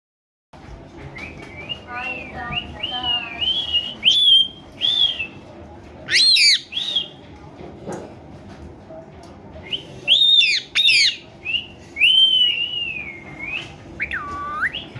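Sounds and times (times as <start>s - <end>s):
parrot whistling: 2.6s - 5.4s, 6.1s - 7.1s, 9.7s - 14.9s.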